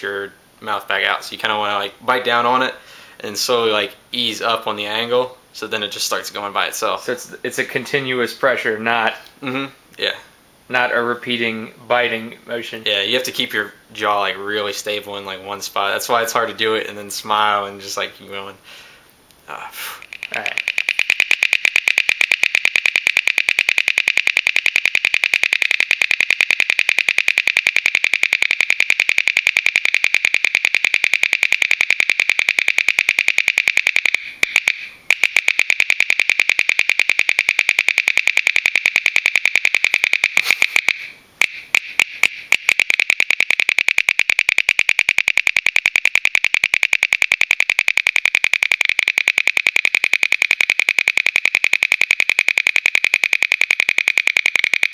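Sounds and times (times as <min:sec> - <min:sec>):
bottle cap clicking rapidly: 0:20.0 - 0:54.9.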